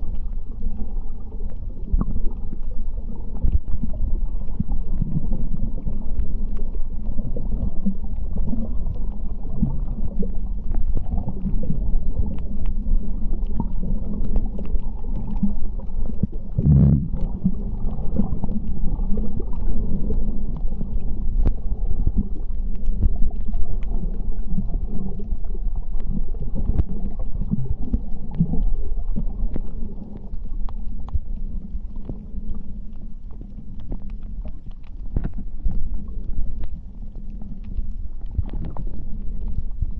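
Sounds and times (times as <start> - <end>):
muffled underwater rumble: 0.0 - 39.9
water gurgling surge: 0.0 - 39.9
faint clicks: 25.9 - 39.9.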